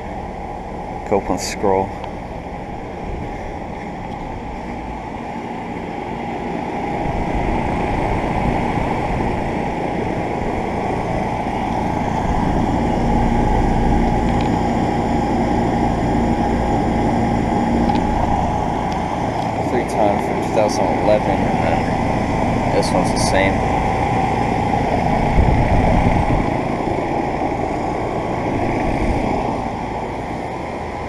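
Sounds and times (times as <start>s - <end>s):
air conditioner fan rushing: 0.0s - 31.0s
low steady hum: 0.0s - 31.0s.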